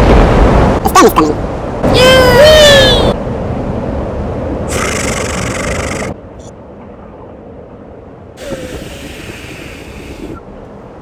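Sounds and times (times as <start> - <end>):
wind buffeting the microphone: 8.4 - 10.6.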